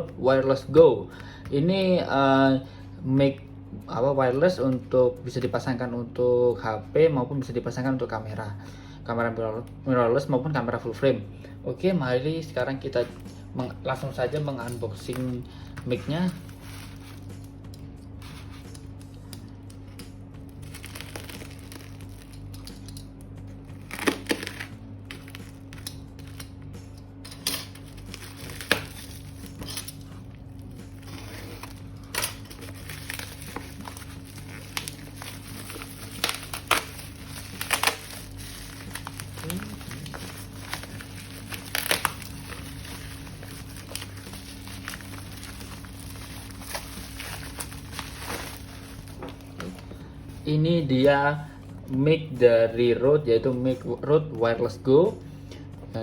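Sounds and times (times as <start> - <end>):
packaging crinkling: 14.1 - 17.6, 18.2 - 23.0, 23.7 - 26.5, 27.6 - 50.0
packaging tearing: 14.3 - 17.6, 20.4 - 23.0, 23.7 - 26.5, 27.4 - 49.8.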